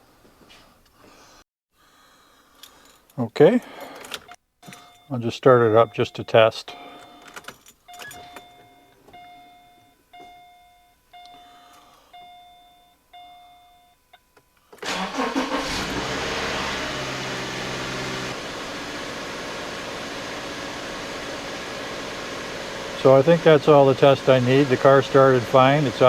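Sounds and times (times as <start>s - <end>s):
dashboard warning chime: 3.6s - 14.3s
car engine starting and idling: 14.8s - 26.0s.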